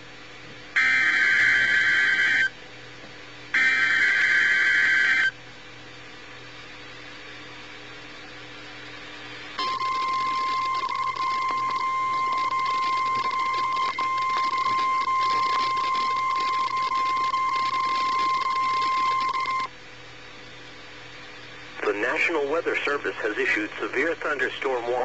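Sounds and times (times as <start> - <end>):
steady high alarm beep: 0.8 - 2.5, 3.6 - 5.3, 9.6 - 19.7
radio hiss: 21.2 - 25.0.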